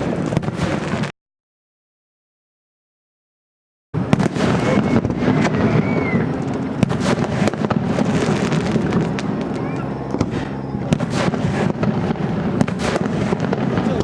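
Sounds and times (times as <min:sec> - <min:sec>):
fireworks crackling and banging: 0:00.0 - 0:01.2, 0:04.0 - 0:14.0
continuous low rumble: 0:04.0 - 0:14.0.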